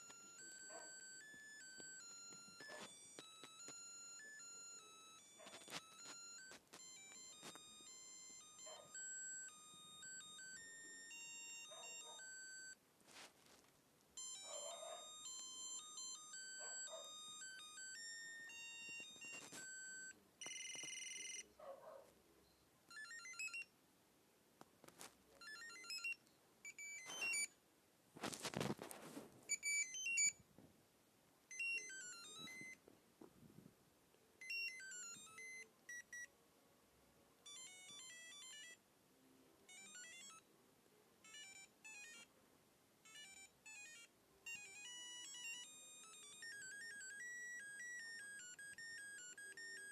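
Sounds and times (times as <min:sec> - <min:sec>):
phone ringtone beeping melodies: 0:00.0 - 0:12.8, 0:14.2 - 0:21.5, 0:22.9 - 0:23.7, 0:25.4 - 0:27.6, 0:29.5 - 0:30.4, 0:31.5 - 0:32.8, 0:34.4 - 0:36.3, 0:37.4 - 0:38.8, 0:39.7 - 0:40.5, 0:41.2 - 0:42.3, 0:43.0 - 0:49.9.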